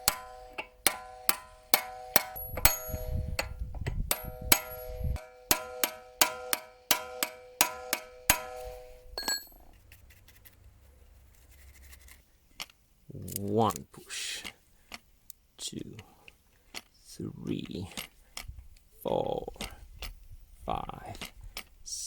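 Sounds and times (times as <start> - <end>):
metal-on-metal taps: 0.0 - 9.6.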